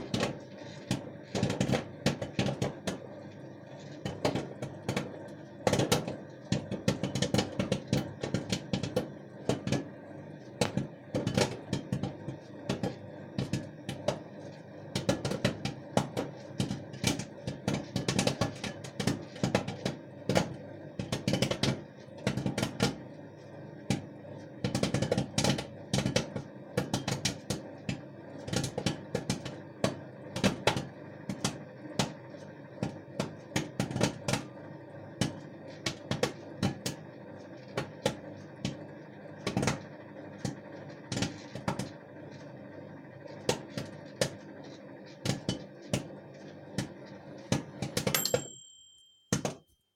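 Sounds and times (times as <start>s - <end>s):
microwave oven hum: 0.0s - 49.6s
popcorn popping: 0.0s - 49.7s
microwave beep: 48.0s - 49.9s.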